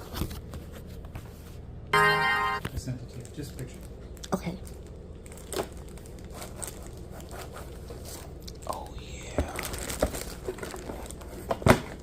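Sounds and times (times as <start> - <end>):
crinkling handling noises: 3.1 - 12.0.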